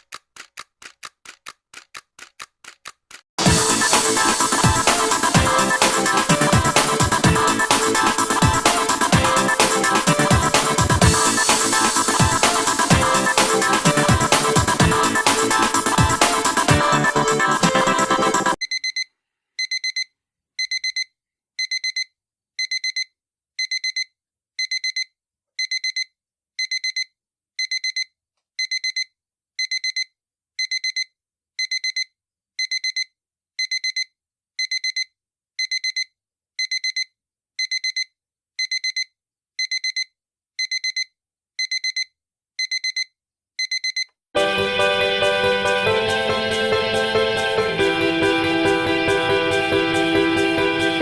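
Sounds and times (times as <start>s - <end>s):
music: 3.4s - 18.6s, 44.4s - 51.0s.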